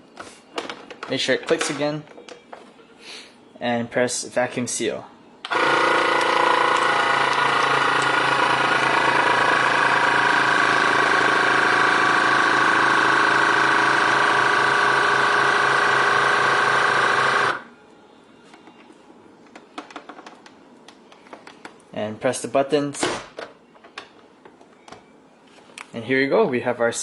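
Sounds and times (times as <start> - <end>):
vacuum sealer pump motor pulsing: 5.5 - 17.6.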